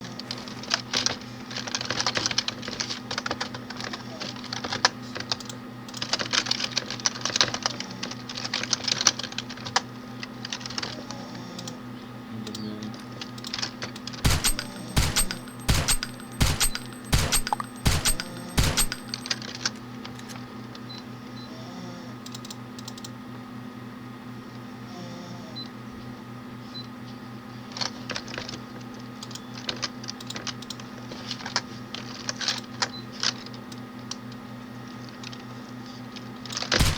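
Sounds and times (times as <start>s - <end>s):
sharp evenly spaced clicks: 14.2s - 19.8s
fast clicking and tapping: 14.2s - 20.3s
steady low hum: 14.2s - 20.3s.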